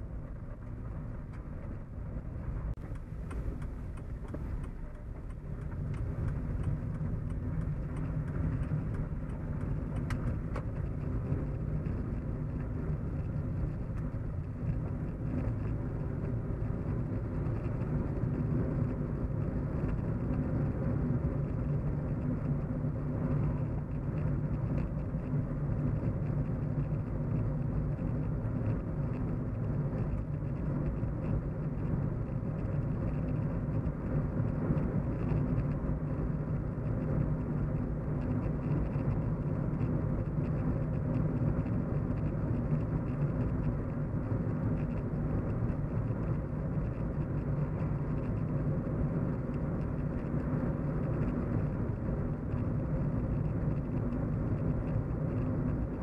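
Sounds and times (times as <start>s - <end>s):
car road and engine hum: 0.0s - 56.0s.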